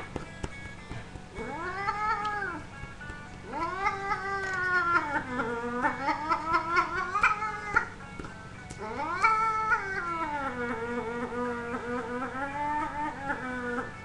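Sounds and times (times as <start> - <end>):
cat yowling: 1.4 - 2.8, 3.4 - 8.0, 8.8 - 14.0.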